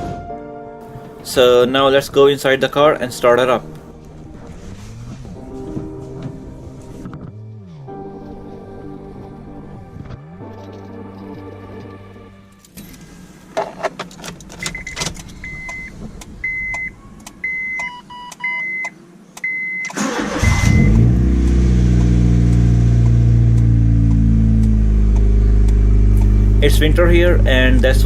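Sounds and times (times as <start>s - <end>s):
car engine starting and idling: 0.0s - 28.0s
dashboard warning beeps: 14.6s - 21.1s.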